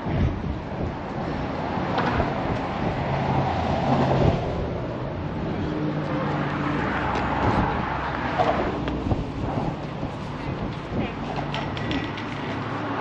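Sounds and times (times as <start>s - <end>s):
road noise: 0.0s - 13.0s.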